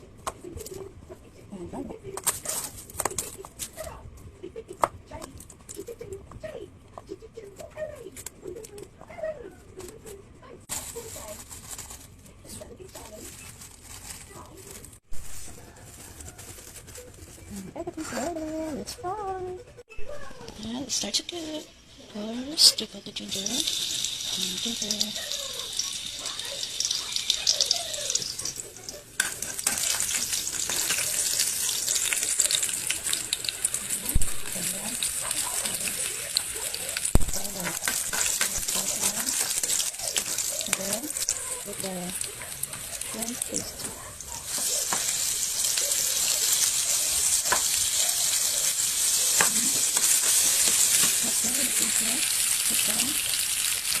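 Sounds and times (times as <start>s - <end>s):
food sizzling in hot oil: 20.6s - 54.0s.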